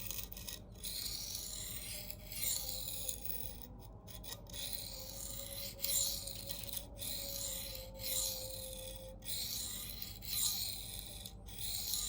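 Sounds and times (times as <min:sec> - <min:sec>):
knife scraping on sharpening plate: 0:04.1 - 0:12.0.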